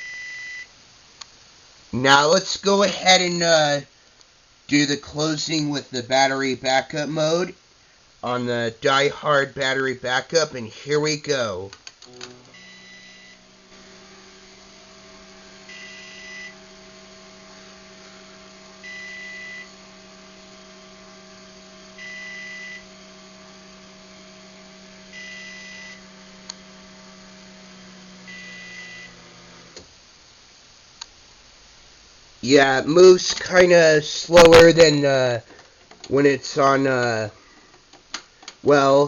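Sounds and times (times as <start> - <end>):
garage door opener motor hum: 12.0 - 29.9
motor stopping click: 12.0 - 29.9
short beep: 12.6 - 13.4.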